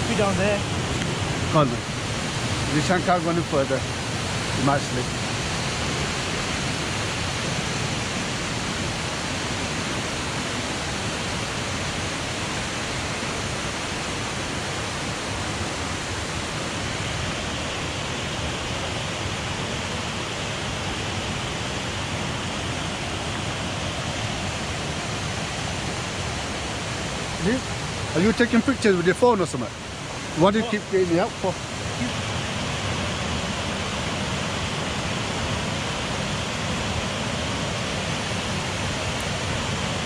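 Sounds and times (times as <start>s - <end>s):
waterfall rushing: 0.0s - 40.0s.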